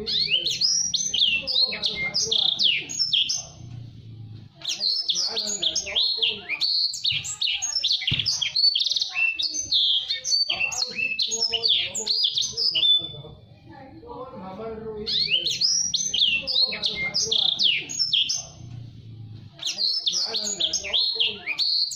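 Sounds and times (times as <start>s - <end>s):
canary singing whistled notes: 0.0s - 3.6s, 4.6s - 13.2s, 15.1s - 18.6s, 19.6s - 21.9s.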